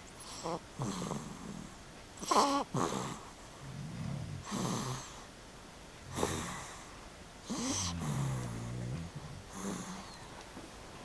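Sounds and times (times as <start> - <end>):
person snoring: 0.4 - 5.2, 6.1 - 6.9, 7.5 - 10.3
noisy breath: 6.1 - 10.4.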